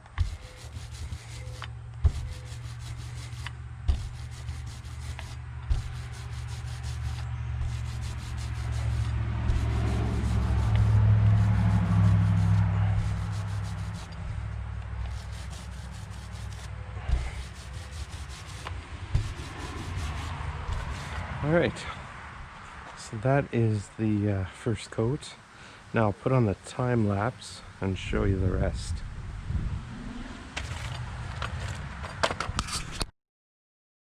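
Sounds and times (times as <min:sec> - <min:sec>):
paint roller rubbing: 0:00.0 - 0:21.9
low hum: 0:00.0 - 0:22.7, 0:28.9 - 0:31.9.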